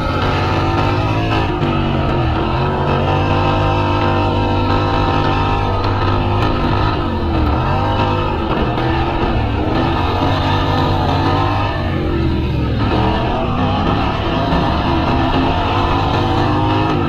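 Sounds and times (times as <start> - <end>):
racing lawnmower engines: 0.0 - 17.0.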